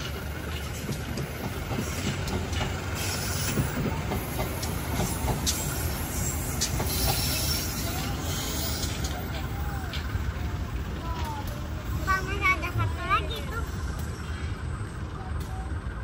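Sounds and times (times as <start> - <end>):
sharp clicks of rails: 0.0 - 5.8
train wheels rumbling on rails: 0.0 - 16.0
faint wheel squeal: 5.0 - 10.0.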